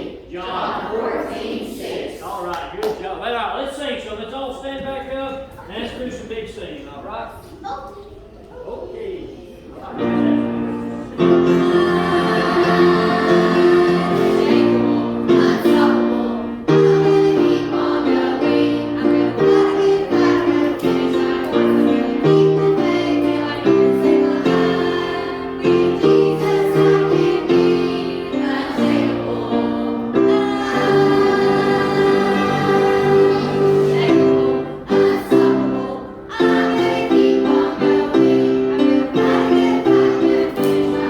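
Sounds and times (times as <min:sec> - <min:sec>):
group singing children's song: 0:00.0 - 0:03.1, 0:09.7 - 0:41.0
instrumental backing: 0:10.1 - 0:41.0.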